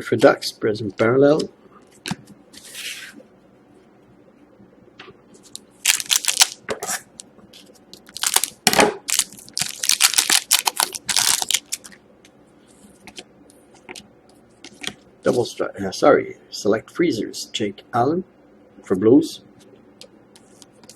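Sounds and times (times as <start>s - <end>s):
card wrappers crinkling: 5.5s - 6.6s, 8.0s - 12.0s.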